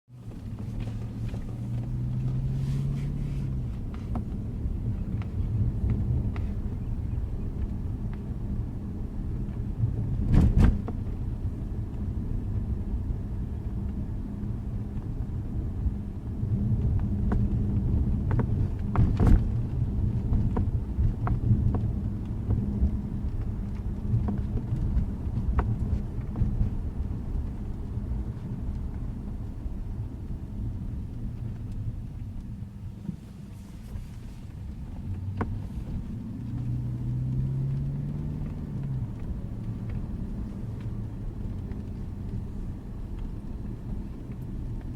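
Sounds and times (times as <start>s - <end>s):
car engine and road rumble: 0.1s - 44.9s.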